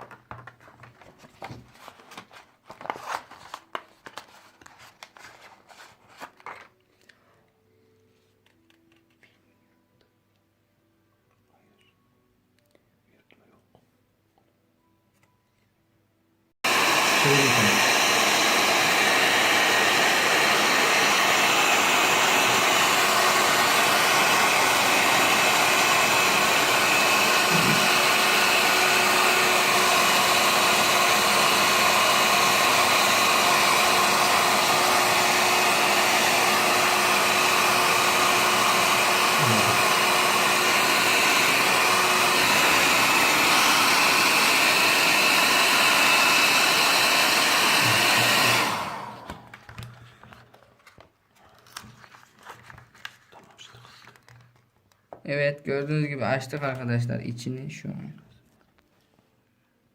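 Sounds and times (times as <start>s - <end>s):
hair dryer blowing: 16.6s - 50.0s.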